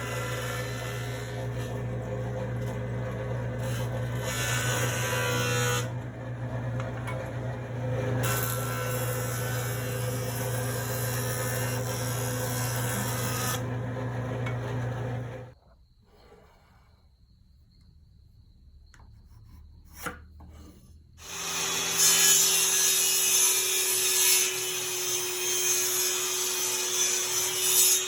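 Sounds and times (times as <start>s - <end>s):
jointer motor hum: 0.0s - 15.6s
wood cutting noise: 0.0s - 15.6s, 21.2s - 28.0s.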